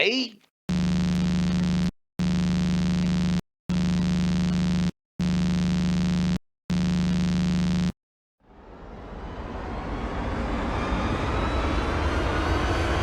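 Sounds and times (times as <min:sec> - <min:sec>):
electronic buzzer pulses: 0:00.7 - 0:08.0.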